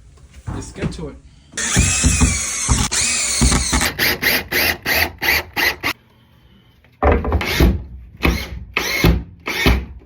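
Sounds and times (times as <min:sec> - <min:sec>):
power drill running: 0:01.6 - 0:06.0.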